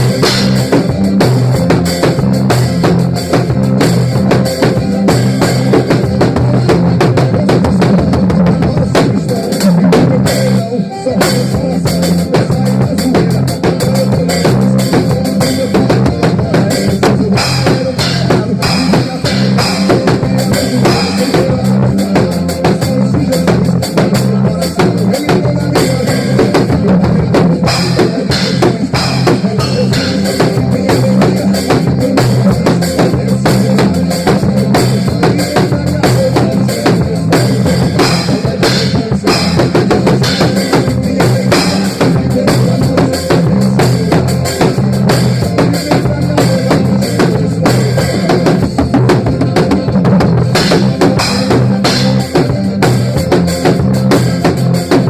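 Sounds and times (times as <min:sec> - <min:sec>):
drum kit playing: 0:00.0 - 0:55.0
heavy bass line: 0:00.0 - 0:55.0
loud recorded song: 0:00.0 - 0:55.0.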